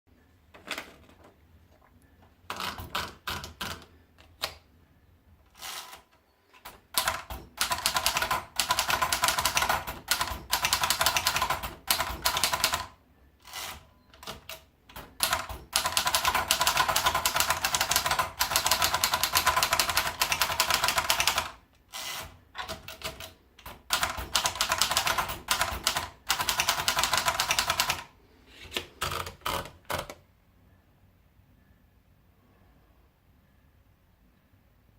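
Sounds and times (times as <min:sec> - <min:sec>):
typewriter keystrokes clattering: 0:02.5 - 0:04.6, 0:06.6 - 0:28.1, 0:28.8 - 0:30.2.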